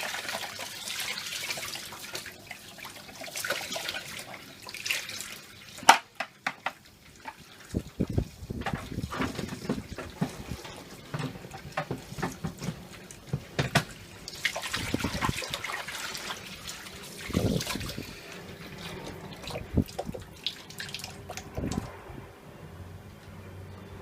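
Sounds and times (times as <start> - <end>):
tap water running into sink: 0.0 - 21.9
plastic tank knocks and clatters: 8.5 - 13.9.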